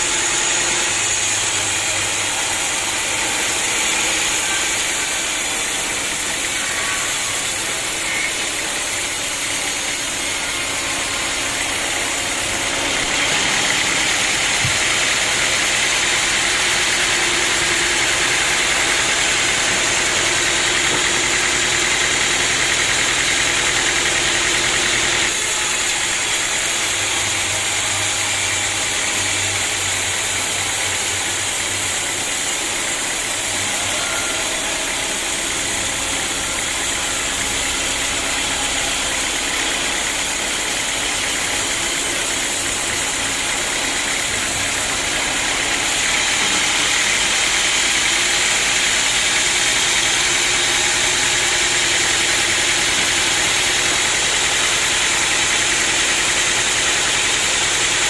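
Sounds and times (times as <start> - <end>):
sawmill machinery hissing: 0.0 - 58.0.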